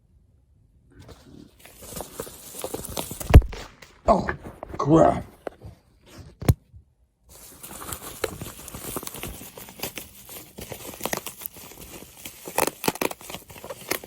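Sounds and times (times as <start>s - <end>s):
packaging crinkling: 1.1s - 4.0s, 7.3s - 14.0s.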